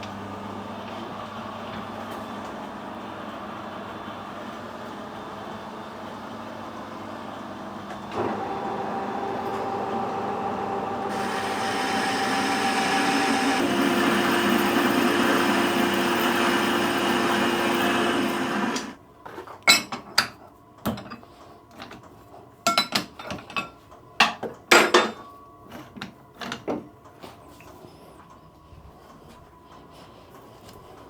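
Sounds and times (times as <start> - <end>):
metal lathe running: 8.2 - 19.0.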